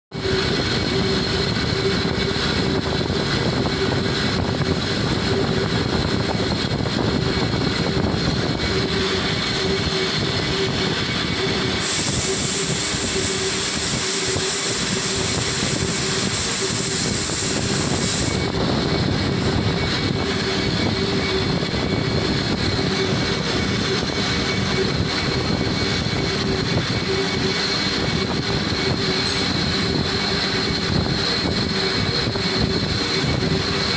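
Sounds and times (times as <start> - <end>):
lathe running: 0.1 - 33.9
hissing noise: 10.9 - 18.6.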